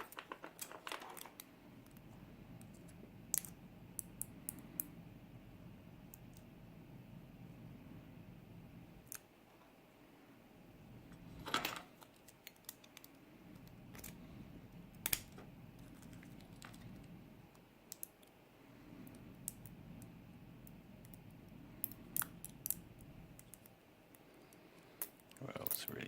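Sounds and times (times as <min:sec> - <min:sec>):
faint handling noise: 0:00.0 - 0:03.6.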